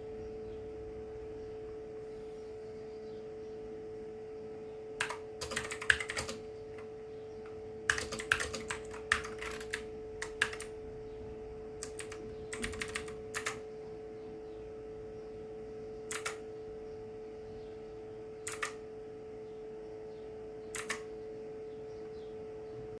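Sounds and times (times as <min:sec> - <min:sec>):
low hum: 0:00.0 - 0:23.0
mechanical keyboard typing: 0:05.0 - 0:06.9, 0:07.9 - 0:10.8, 0:11.8 - 0:13.7, 0:16.1 - 0:16.4, 0:18.4 - 0:18.8, 0:20.7 - 0:21.1.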